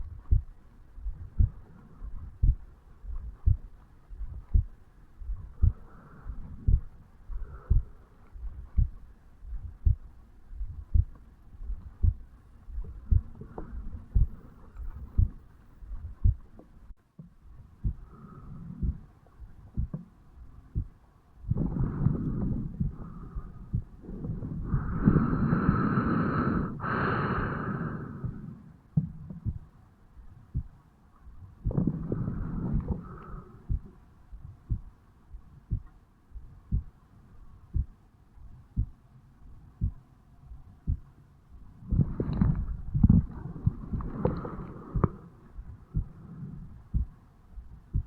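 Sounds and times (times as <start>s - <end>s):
heartbeat thuds: 0.0s - 26.8s, 28.2s - 48.0s
rustling noise: 41.6s - 46.9s.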